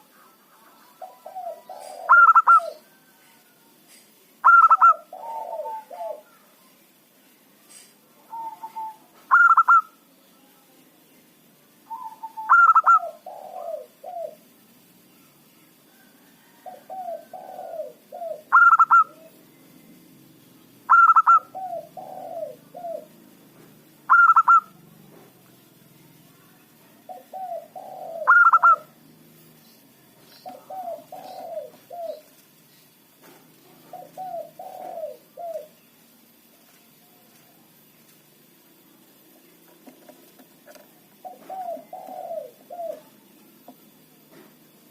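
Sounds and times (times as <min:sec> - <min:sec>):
dove cooing: 0:01.0 - 0:03.2, 0:04.4 - 0:06.4, 0:07.7 - 0:10.0, 0:11.9 - 0:14.5, 0:15.9 - 0:19.4, 0:20.9 - 0:23.2, 0:24.1 - 0:24.8, 0:27.1 - 0:29.0, 0:30.2 - 0:32.4, 0:33.6 - 0:35.8, 0:40.0 - 0:43.9.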